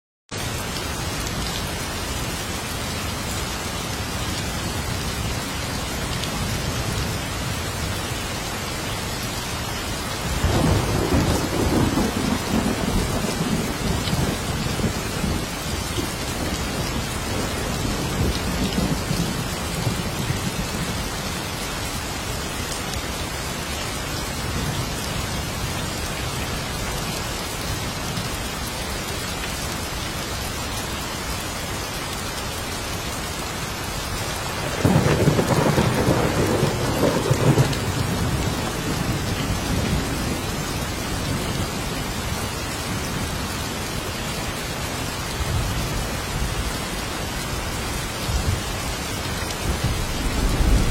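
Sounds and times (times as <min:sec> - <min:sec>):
heavy rain hissing: 0:00.4 - 0:50.9
rolling thunder: 0:10.3 - 0:15.6, 0:34.6 - 0:41.7, 0:49.6 - 0:50.9
thunderclap: 0:34.6 - 0:40.4, 0:49.7 - 0:50.9.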